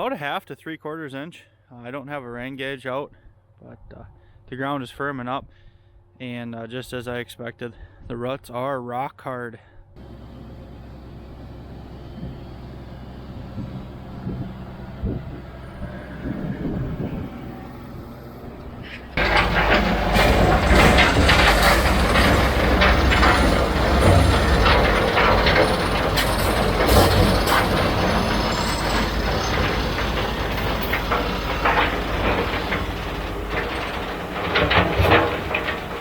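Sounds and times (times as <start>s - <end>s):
farm vehicle rumble: 10.0s - 36.0s
rattling and clanking: 10.0s - 36.0s.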